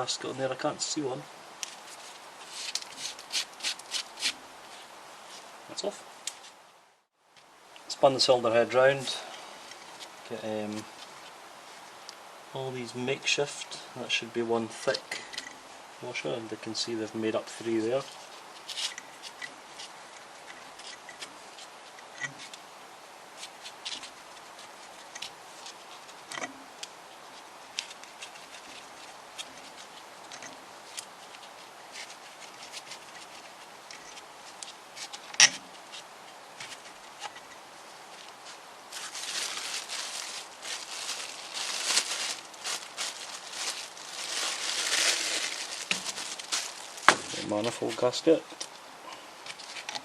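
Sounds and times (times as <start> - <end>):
scraping and rustling: 1.6 - 6.7, 14.9 - 22.6, 23.3 - 50.0.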